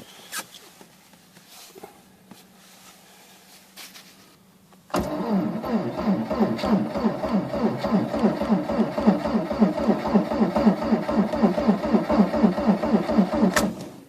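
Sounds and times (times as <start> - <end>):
diesel engine cranking and starting: 4.9 - 14.0.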